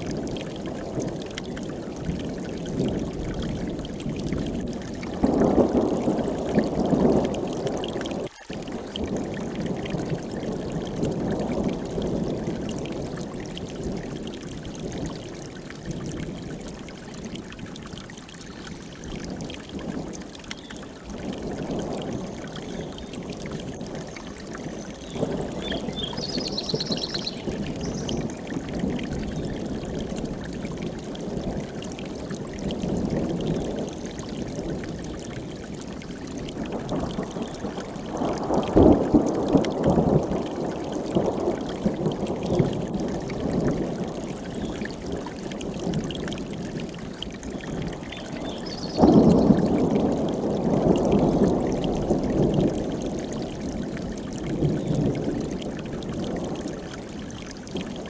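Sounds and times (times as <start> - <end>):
mountain stream rushing: 16.7 - 54.8
thunder rumbling: 36.5 - 44.4.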